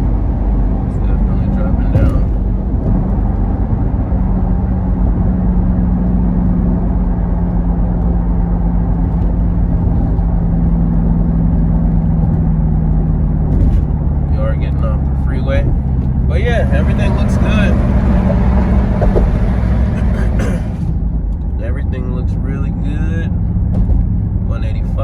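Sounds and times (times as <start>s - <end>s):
car engine drone: 0.0s - 25.0s
tyre and road noise: 0.0s - 25.0s.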